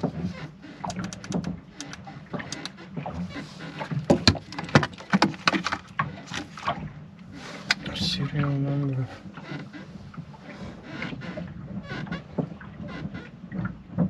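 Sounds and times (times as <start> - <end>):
low steady hum: 0.0 - 14.0
small clicks and knocks: 0.8 - 2.8.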